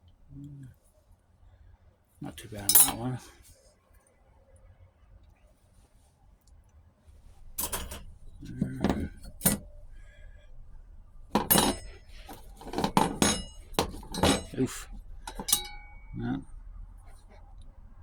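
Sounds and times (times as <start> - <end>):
metal plates clinking and clattering: 2.7 - 3.0, 7.6 - 9.7, 11.3 - 16.2.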